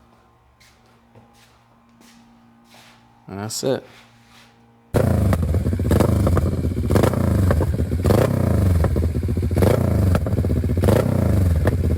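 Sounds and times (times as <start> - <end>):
motorcycle engine revving: 4.9 - 11.9
sharp exhaust cracks: 5.0 - 11.9.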